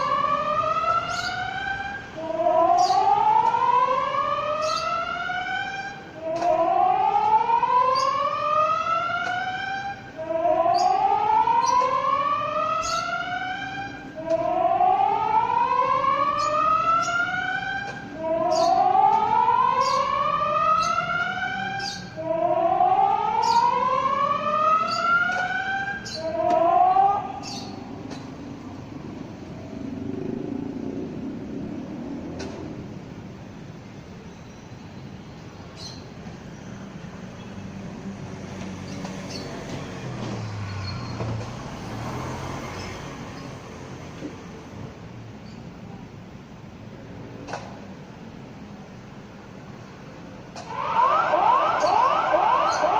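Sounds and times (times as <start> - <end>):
warning siren whooping: 0.0 - 33.6, 50.6 - 52.9.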